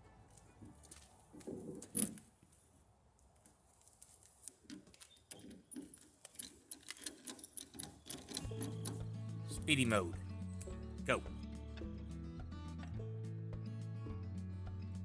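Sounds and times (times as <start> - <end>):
tools clicking and rattling: 0.3 - 2.3, 3.8 - 9.1.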